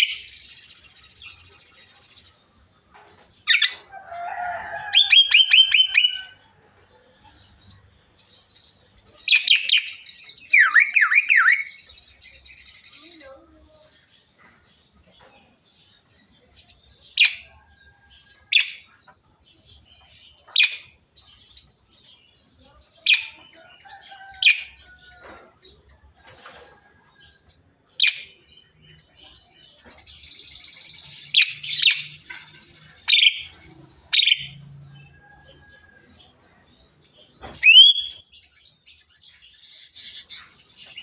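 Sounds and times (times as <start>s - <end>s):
bird sharp piercing calls: 9.1s - 13.1s, 37.5s - 38.3s.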